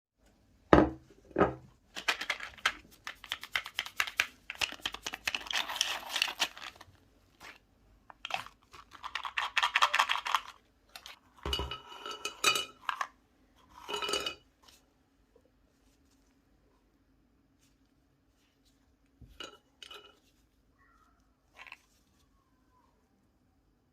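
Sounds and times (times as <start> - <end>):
utensils and dishes clinking: 11.4 - 13.0, 13.8 - 14.4.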